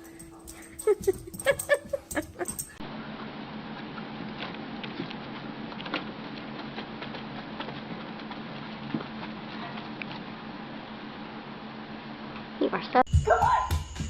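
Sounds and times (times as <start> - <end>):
dog scrabbling and tapping: 0.0 - 2.8.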